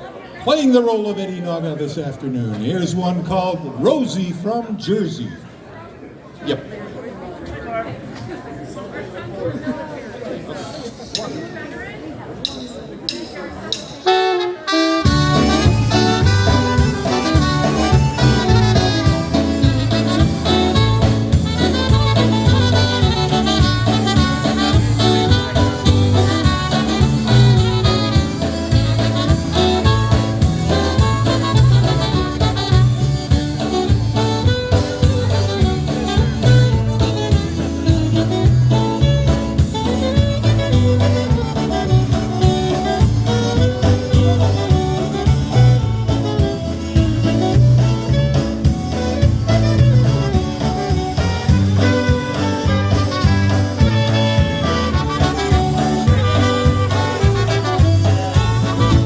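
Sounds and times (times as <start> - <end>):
polka band playing: 0.0 - 5.3, 10.5 - 11.7, 12.4 - 59.0
alto saxophone: 14.0 - 59.0
steady bass beat: 15.1 - 59.0.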